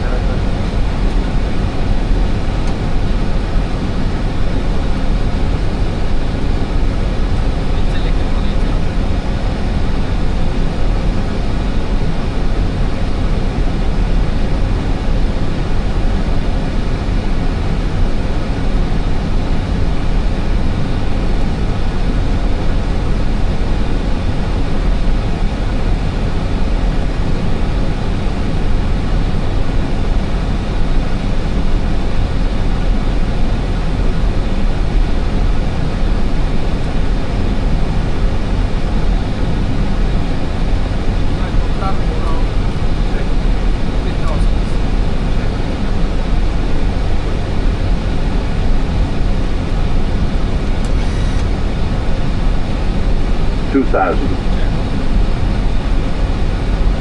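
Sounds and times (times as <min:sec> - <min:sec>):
cockpit airflow and engine rumble: 0:00.0 - 0:57.0
faint steady tones: 0:33.9 - 0:57.0.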